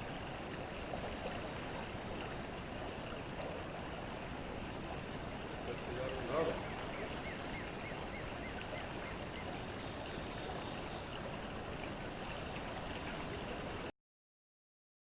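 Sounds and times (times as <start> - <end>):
creek water running: 0.0 - 13.9.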